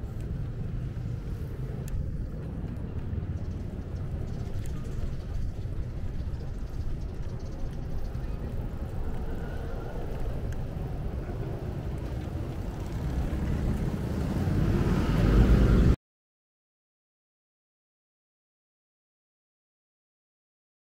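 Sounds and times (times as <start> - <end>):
bicycle road noise: 0.0 - 16.0
wind rumble on microphone: 0.0 - 16.0.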